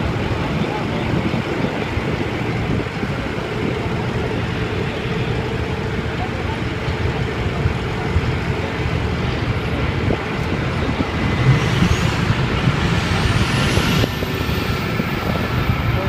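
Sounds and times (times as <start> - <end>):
low engine rumble: 0.0 - 16.0
jet engine whine rising: 9.0 - 16.0.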